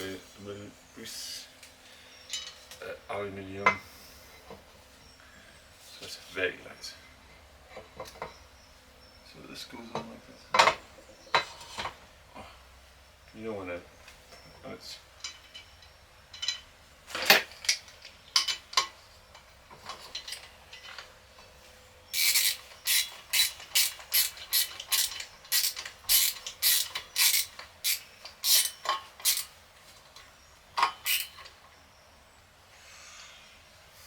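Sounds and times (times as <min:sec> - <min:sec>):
mechanical ratcheting clicks: 0:22.1 - 0:29.5, 0:31.0 - 0:31.5.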